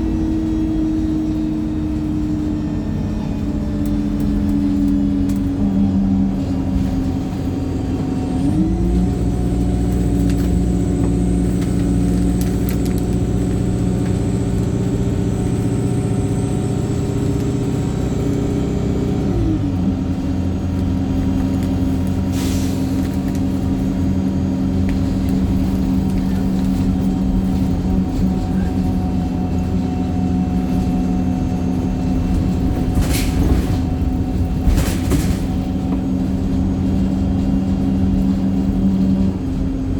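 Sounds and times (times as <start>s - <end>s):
bus engine droning: 0.0s - 39.9s
air brake hisses: 22.3s - 23.0s.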